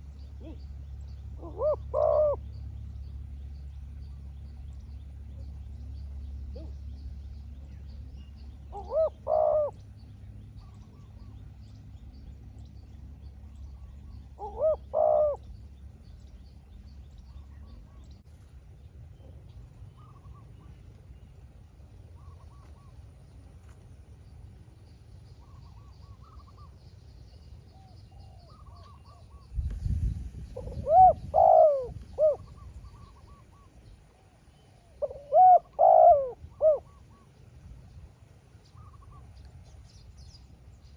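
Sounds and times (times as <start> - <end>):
dove cooing: 1.4 - 2.5, 8.7 - 9.8, 14.3 - 15.5, 30.5 - 33.7, 34.8 - 37.2.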